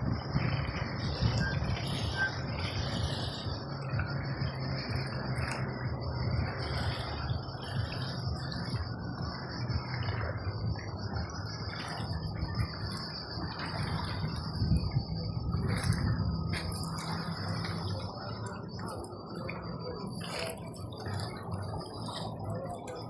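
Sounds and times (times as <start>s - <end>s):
constant rushing noise: 0.0s - 23.0s.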